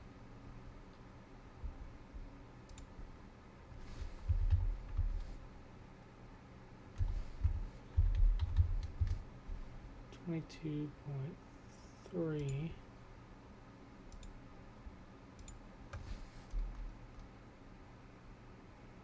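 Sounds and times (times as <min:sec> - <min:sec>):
keyboard typing thuds: 0:03.8 - 0:05.4, 0:07.0 - 0:09.7, 0:15.4 - 0:17.3
sharp clicks: 0:14.1 - 0:14.4, 0:15.4 - 0:15.6.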